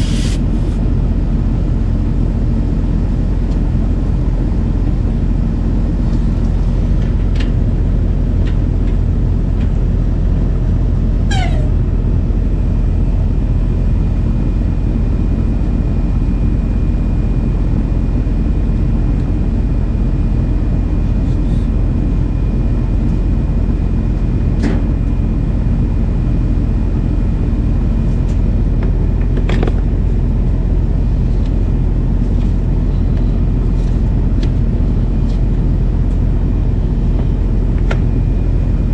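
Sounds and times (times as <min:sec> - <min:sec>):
vehicle rumble on road: 0:00.0 - 0:14.6, 0:20.6 - 0:38.9
falling squeak: 0:11.3 - 0:11.8.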